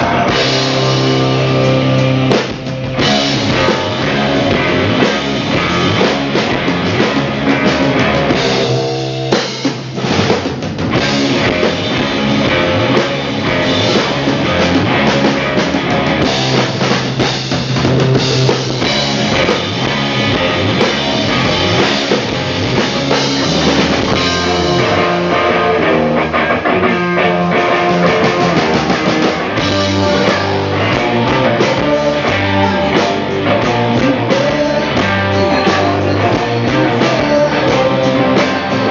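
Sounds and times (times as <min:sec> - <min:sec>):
live rock band playing: 0:00.0 - 0:38.9.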